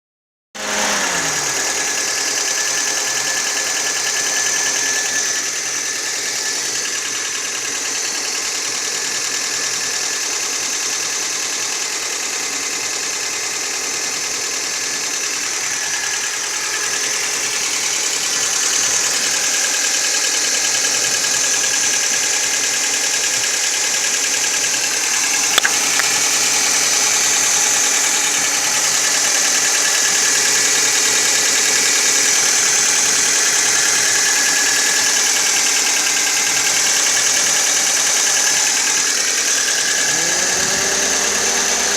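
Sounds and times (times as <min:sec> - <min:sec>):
car engine idling: 0:00.6 - 0:41.9
sharp click: 0:25.2 - 0:26.8.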